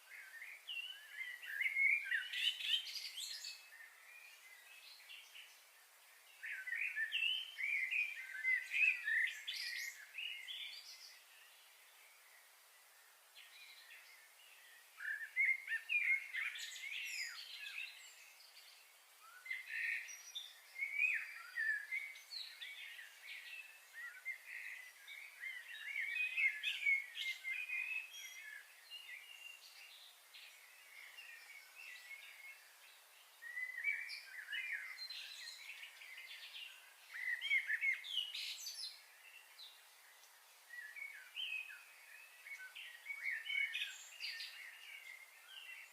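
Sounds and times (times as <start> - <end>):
small birds chirping: 0.0 - 45.9.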